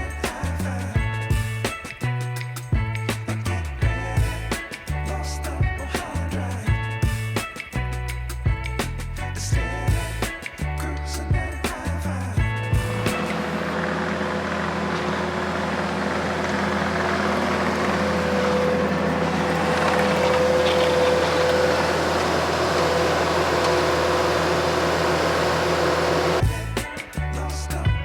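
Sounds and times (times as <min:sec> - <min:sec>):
heavy equipment engine droning: 0:12.8 - 0:26.4.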